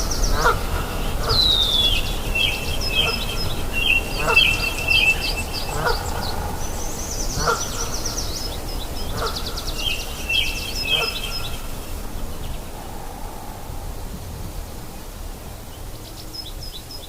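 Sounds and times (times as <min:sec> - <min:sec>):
birds calling: 0:00.0 - 0:14.0
river rushing: 0:00.0 - 0:17.0
bird trill: 0:01.3 - 0:06.7.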